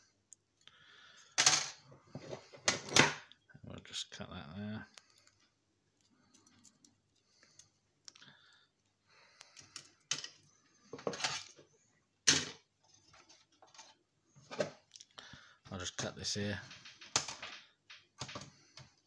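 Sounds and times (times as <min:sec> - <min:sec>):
plastic and metal parts rattling: 0:09.6 - 0:14.8, 0:16.0 - 0:19.0.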